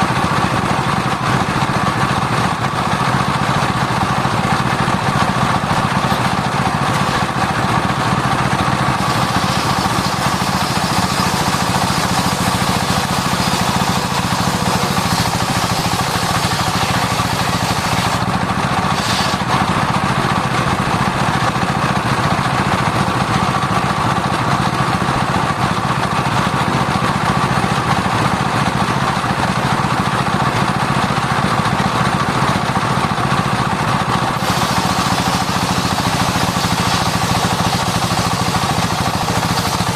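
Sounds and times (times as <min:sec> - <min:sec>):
circular saw cutting wood: 0:00.8 - 0:21.6, 0:34.2 - 0:39.9.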